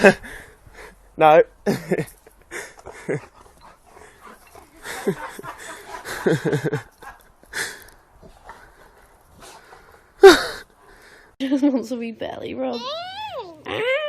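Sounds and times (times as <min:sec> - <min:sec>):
dog crying: 0:12.7 - 0:14.0.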